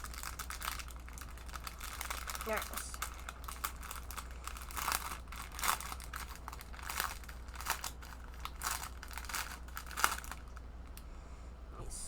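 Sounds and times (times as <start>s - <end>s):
plastic packaging crinkling: 0.0s - 11.0s.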